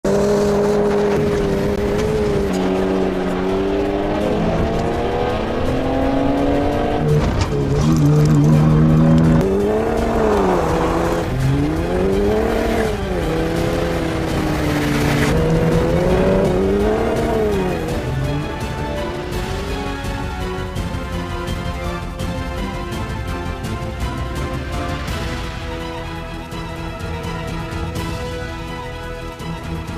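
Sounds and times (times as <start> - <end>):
pickup truck engine revving: 0.0 - 20.4.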